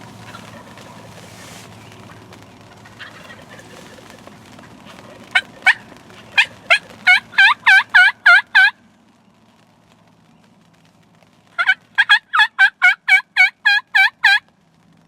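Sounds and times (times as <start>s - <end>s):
turkey yelping: 0.2s - 8.8s, 11.6s - 14.4s.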